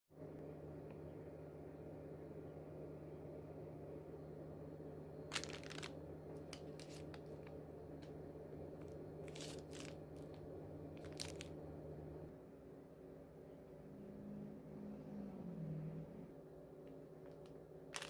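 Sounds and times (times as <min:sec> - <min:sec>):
steady low hum: 0:00.1 - 0:18.0
plastic packaging crinkling: 0:05.3 - 0:07.5, 0:09.2 - 0:10.4, 0:11.0 - 0:11.6, 0:17.3 - 0:18.0.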